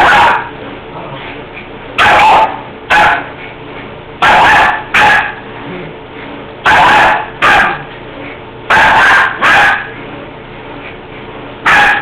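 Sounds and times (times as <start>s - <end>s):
dog barking: 0.0s - 0.5s, 2.0s - 3.3s, 4.2s - 5.4s, 6.7s - 7.9s, 8.7s - 10.0s, 11.6s - 12.0s.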